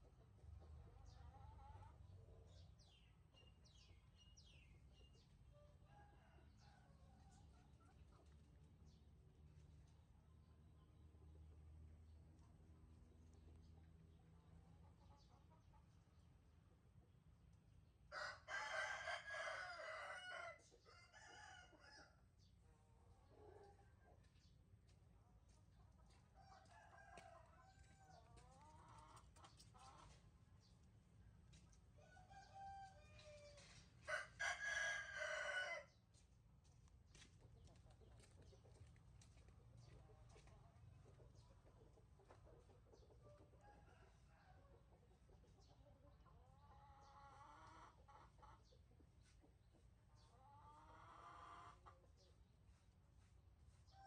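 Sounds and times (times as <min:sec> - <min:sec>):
rooster crowing: 0:18.1 - 0:22.1, 0:32.0 - 0:35.9.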